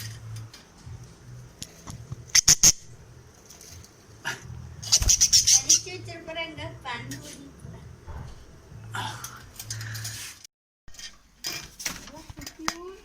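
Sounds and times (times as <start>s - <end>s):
budgerigars squawking: 4.8s - 5.9s.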